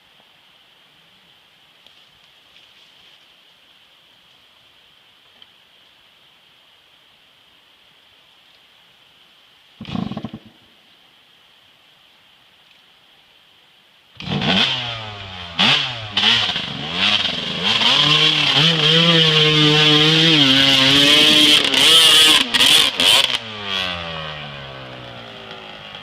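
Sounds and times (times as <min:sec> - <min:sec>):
off-road vehicle engine revving: 0:14.2 - 0:26.0.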